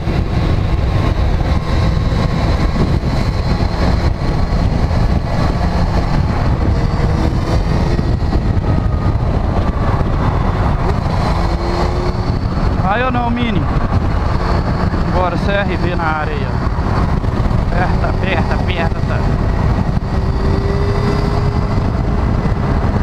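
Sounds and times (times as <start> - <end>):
motorcycle engine running: 0.0 - 23.0
wind rumble on microphone: 0.0 - 23.0.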